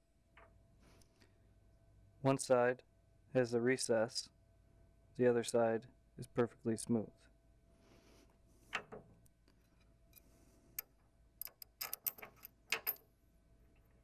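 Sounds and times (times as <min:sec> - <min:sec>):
metal vise knocking and clicking: 0:10.8 - 0:13.0.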